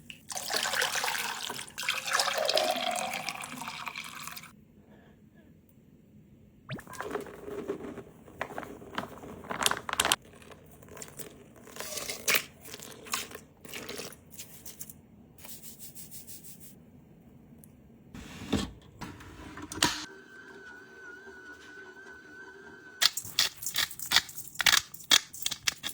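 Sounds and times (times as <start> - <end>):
rustling: 6.9 - 13.3.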